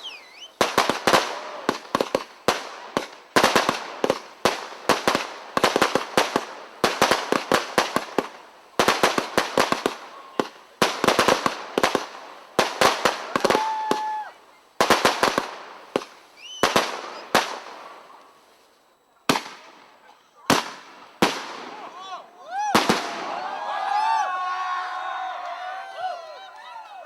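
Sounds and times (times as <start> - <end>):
fireworks bangs and crackles: 0.0 - 23.5.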